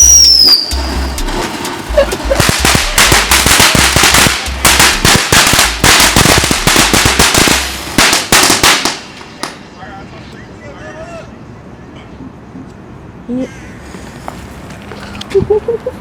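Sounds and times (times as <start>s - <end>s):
firecrackers cracking and popping: 0.0s - 9.7s.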